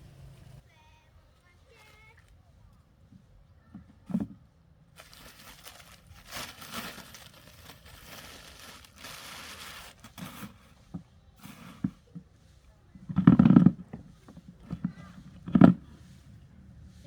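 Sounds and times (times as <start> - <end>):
rustling and scraping: 4.0 - 17.0.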